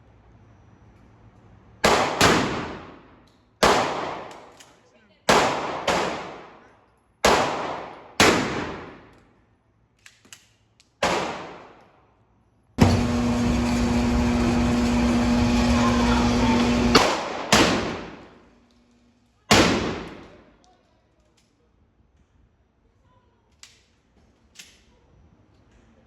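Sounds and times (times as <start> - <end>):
echoing gunshots: 1.8 - 2.9, 3.6 - 4.3, 5.3 - 6.6, 7.2 - 9.1, 11.0 - 11.8, 16.7 - 18.4, 19.5 - 20.4.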